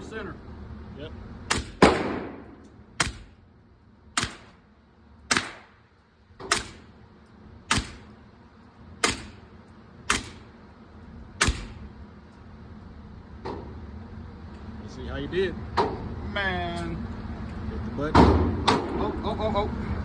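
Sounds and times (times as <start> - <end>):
pistol shots: 1.5 - 3.4, 4.2 - 4.6, 5.3 - 5.8, 6.4 - 7.0, 7.7 - 8.2, 9.0 - 9.5, 10.1 - 10.6, 11.4 - 11.9.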